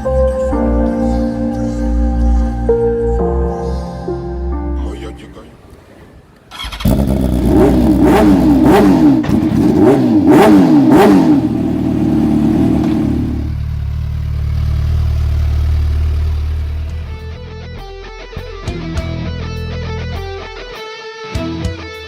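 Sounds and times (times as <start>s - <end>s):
motorcycle engine revving: 6.5s - 17.4s.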